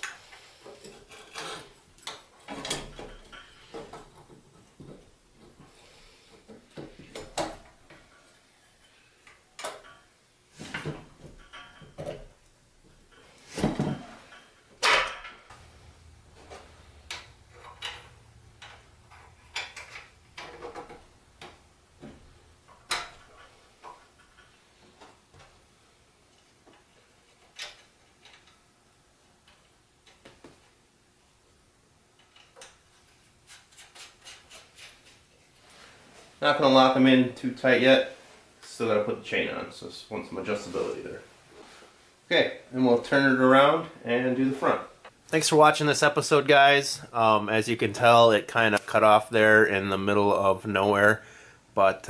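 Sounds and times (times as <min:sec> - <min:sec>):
metal clanks and rattles: 0:02.4 - 0:05.6, 0:10.7 - 0:25.2.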